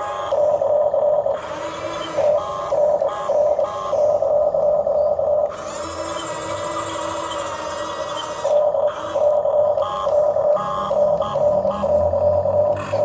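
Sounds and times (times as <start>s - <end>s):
toy electric motors whining: 0.0s - 13.0s.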